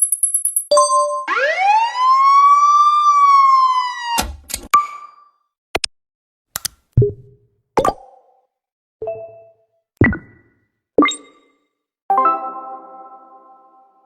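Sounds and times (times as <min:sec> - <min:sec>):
rising siren-like tone: 0:01.3 - 0:04.2
sharp clicks: 0:06.5 - 0:06.9.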